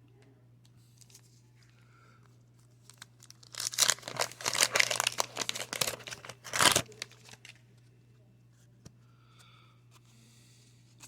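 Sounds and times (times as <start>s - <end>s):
paper wrapper tearing and crinkling: 2.9s - 7.6s.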